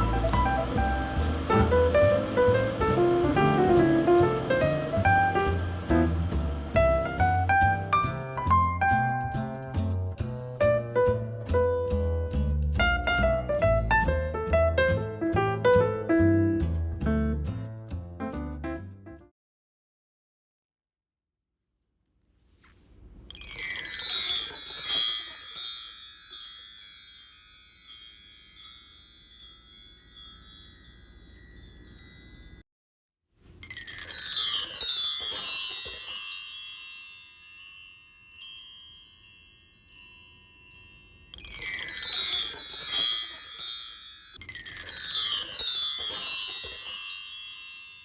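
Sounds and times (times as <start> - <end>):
metal bar chimes ringing: 23.3 - 32.6, 33.6 - 48.0.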